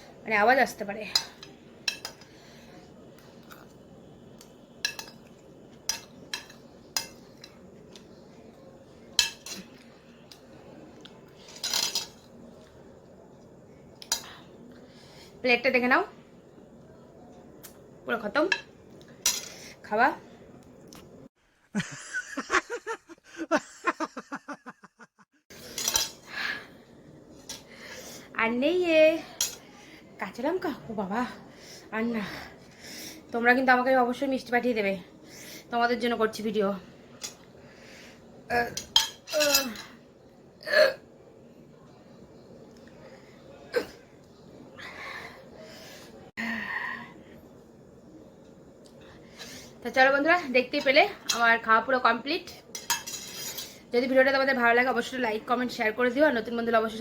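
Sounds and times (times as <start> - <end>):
cutlery clinking on a plate: 1.2 - 2.3, 4.8 - 7.6, 9.2 - 9.8, 11.4 - 12.3, 25.6 - 26.2, 38.8 - 40.0, 52.7 - 53.8.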